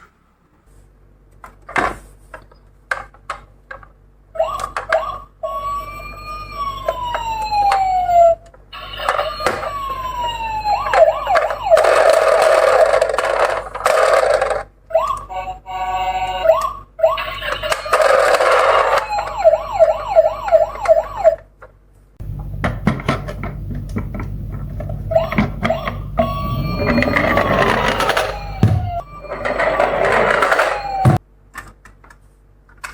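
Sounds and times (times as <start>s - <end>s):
emergency siren wailing: 6.8s - 8.4s, 9.0s - 11.8s, 25.2s - 31.2s
siren yelp: 6.8s - 11.9s, 18.7s - 21.2s, 25.2s - 31.2s.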